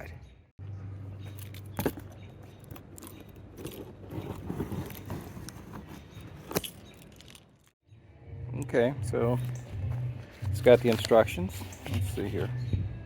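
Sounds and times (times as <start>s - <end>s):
packaging rustling and scraping: 3.2s - 7.8s, 9.4s - 12.7s.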